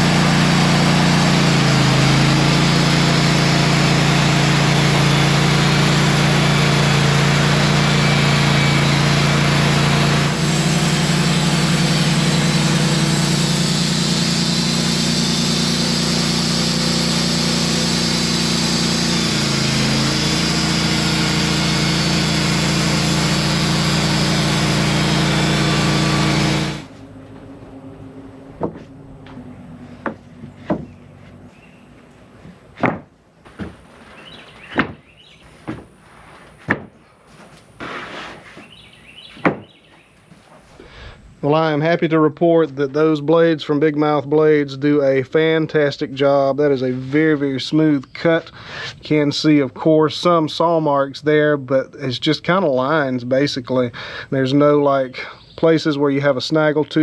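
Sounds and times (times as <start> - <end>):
band sawmill cutting log: 0.0 - 27.6, 28.5 - 31.6
sharp knocks: 28.6 - 28.9, 30.0 - 31.0, 32.8 - 33.8, 34.7 - 35.9, 36.6 - 37.0, 39.4 - 39.8.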